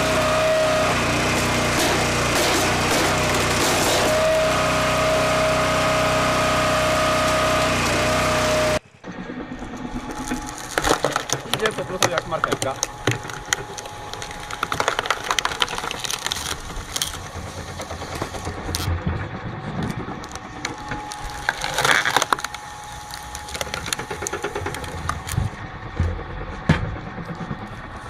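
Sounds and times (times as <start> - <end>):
wood cracking and splintering: 0.1 - 4.9, 10.0 - 27.9.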